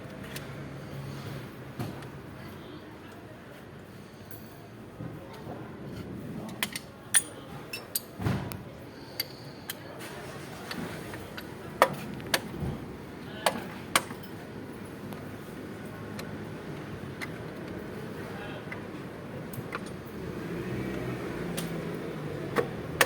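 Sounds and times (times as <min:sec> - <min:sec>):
hand tools clinking on metal: 0:07.1 - 0:08.2.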